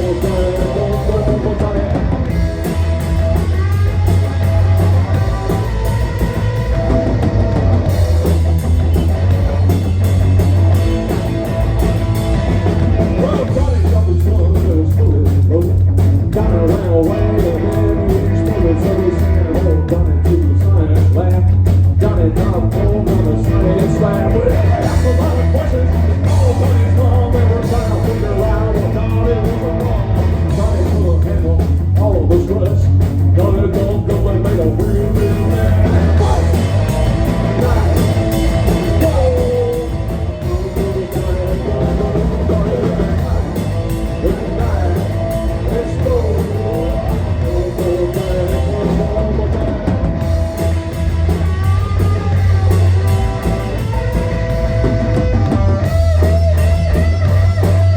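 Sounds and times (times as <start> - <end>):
person singing: 0.0 - 2.6, 13.0 - 50.0
live rock band playing: 0.0 - 57.9.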